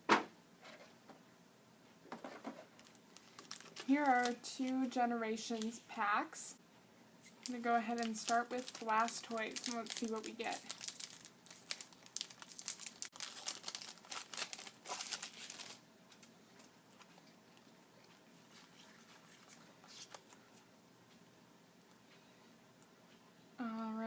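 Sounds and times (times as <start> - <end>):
foil wrapper tearing and crinkling: 2.8 - 4.4, 7.4 - 15.8
faint handling sounds: 7.2 - 20.7.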